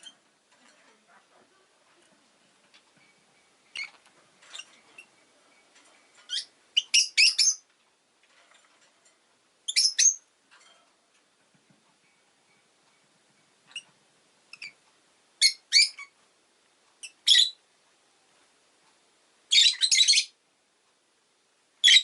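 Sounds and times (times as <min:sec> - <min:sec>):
lovebird chirping: 0:03.0 - 0:07.7, 0:09.6 - 0:10.3, 0:13.7 - 0:13.9, 0:14.5 - 0:14.8, 0:15.4 - 0:16.2, 0:17.0 - 0:17.6, 0:19.5 - 0:20.4, 0:21.8 - 0:22.0.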